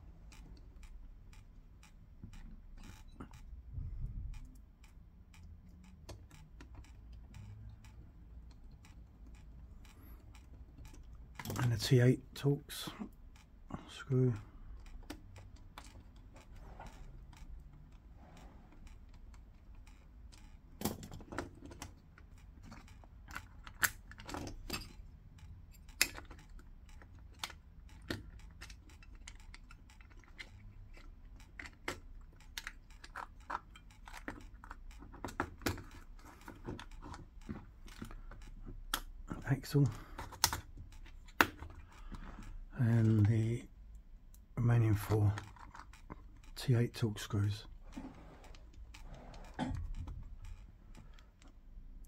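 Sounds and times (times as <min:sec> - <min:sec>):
screwdriver clicking on casing: 0:19.8 - 0:39.1.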